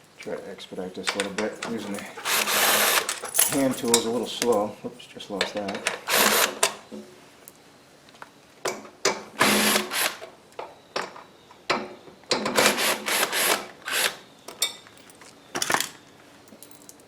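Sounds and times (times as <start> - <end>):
power drill running in bursts: 2.2 - 3.1, 6.0 - 6.6, 9.4 - 10.2, 12.6 - 14.2.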